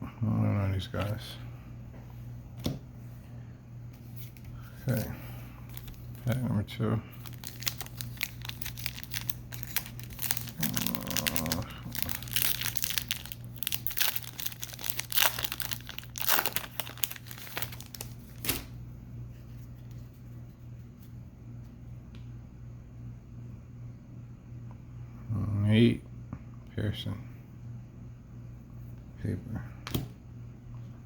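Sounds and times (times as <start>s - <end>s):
wrapper torn and crinkled: 5.7s - 6.4s, 7.2s - 18.7s.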